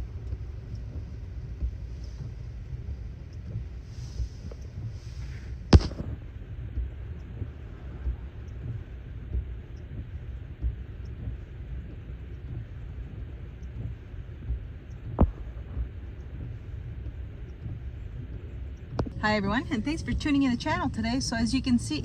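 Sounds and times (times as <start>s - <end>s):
sharp knock: 5.8s - 6.0s.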